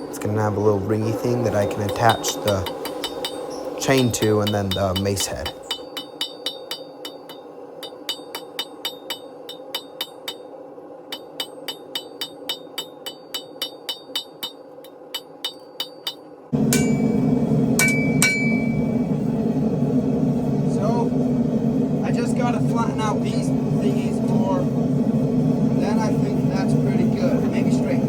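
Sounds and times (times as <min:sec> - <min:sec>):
loud steady rumble: 0:00.0 - 0:05.8, 0:16.5 - 0:28.0
hammer ringing on anvil: 0:01.5 - 0:10.5, 0:11.1 - 0:19.0.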